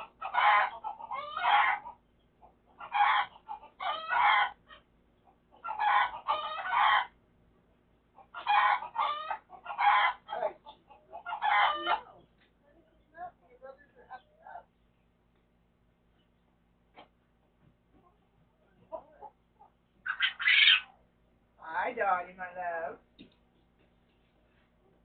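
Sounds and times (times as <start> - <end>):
pet bird calling harshly: 20.0 - 20.9.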